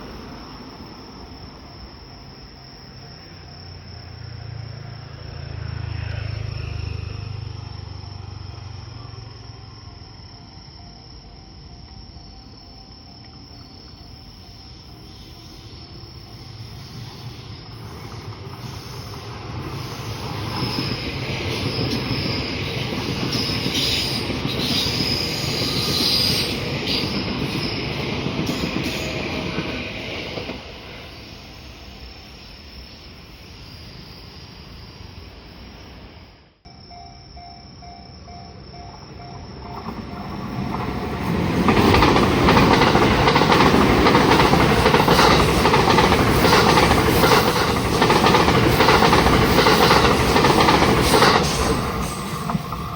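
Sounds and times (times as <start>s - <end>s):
train approaching loudly: 0.0s - 52.9s
train wheels rumbling on rails: 11.8s - 35.8s, 37.0s - 52.9s
crossing warning bell: 36.7s - 52.9s.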